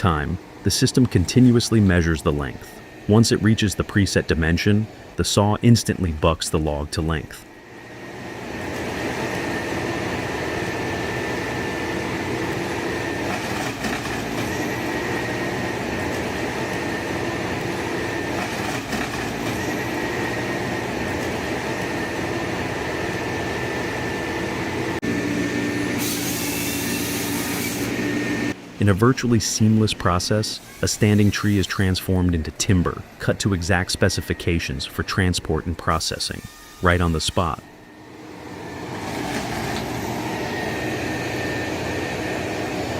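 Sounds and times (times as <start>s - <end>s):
diesel engine drone: 0.0s - 26.0s, 27.9s - 42.9s
high hydraulic whine: 0.0s - 42.9s.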